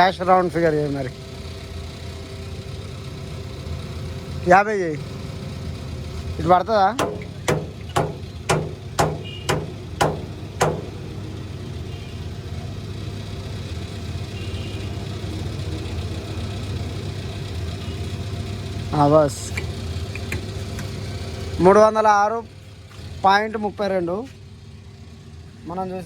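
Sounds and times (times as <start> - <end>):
truck engine idling: 0.0 - 26.0.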